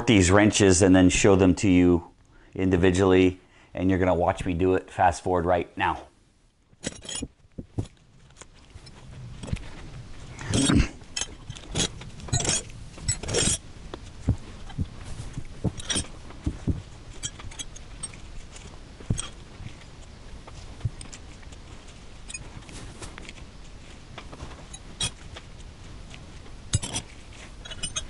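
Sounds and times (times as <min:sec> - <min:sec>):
steel wrenches clinking and clattering: 0:06.8 - 0:07.4, 0:10.5 - 0:13.6, 0:15.7 - 0:16.2, 0:17.2 - 0:19.4, 0:24.7 - 0:25.2, 0:26.7 - 0:28.0.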